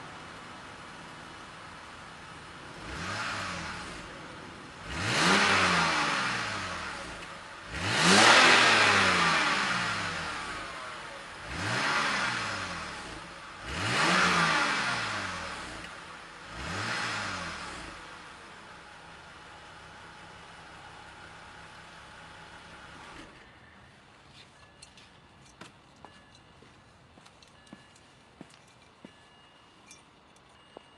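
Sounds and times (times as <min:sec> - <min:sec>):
car engine revving: 0:02.7 - 0:19.2.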